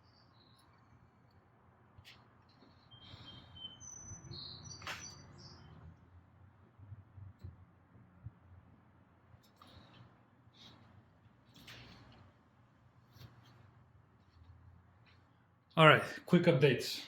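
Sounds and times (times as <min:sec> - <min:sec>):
small birds chirping: 0:00.0 - 0:01.3, 0:02.0 - 0:06.0.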